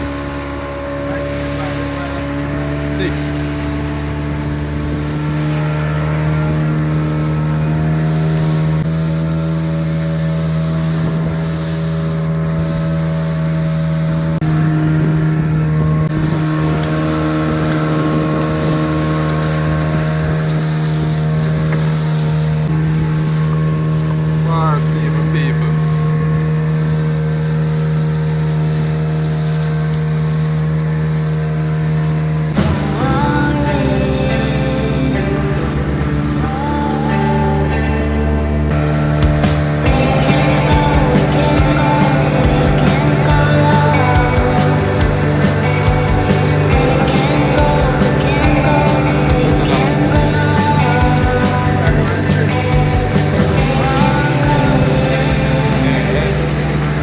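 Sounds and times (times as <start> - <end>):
boat engine running: 0.0 - 57.0
music: 32.6 - 57.0.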